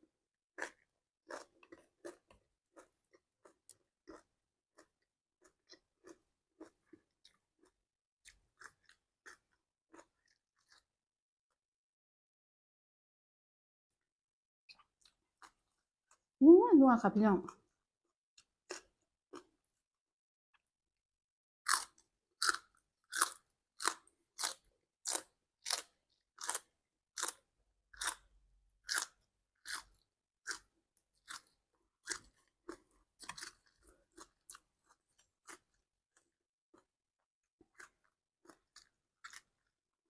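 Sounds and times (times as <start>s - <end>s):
crunchy food being chewed: 0.5s - 11.0s, 14.7s - 16.3s, 18.4s - 19.7s, 21.6s - 40.0s.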